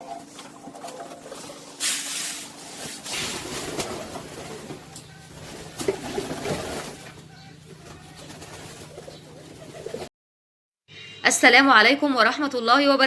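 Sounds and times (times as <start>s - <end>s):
low steady hum: 0.0s - 9.9s
loud rustling bursts: 1.3s - 10.1s
pigeons cooing: 2.7s - 10.1s.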